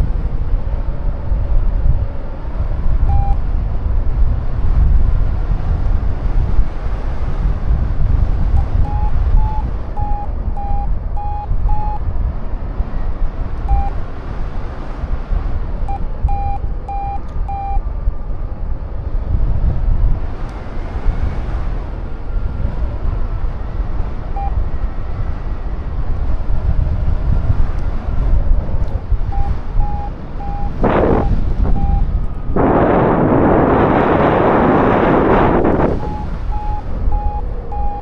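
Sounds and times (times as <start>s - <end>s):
wind buffeting microphone: 0.0s - 38.0s
variometer short beeps: 3.0s - 3.4s, 8.6s - 12.0s, 13.7s - 14.0s, 15.9s - 17.8s, 24.4s - 24.6s, 29.3s - 32.1s, 33.4s - 38.0s.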